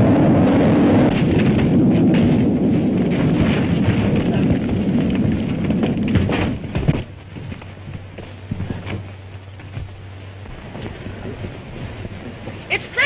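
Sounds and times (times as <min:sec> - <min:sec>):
loud rumbling roar: 0:00.0 - 0:07.2.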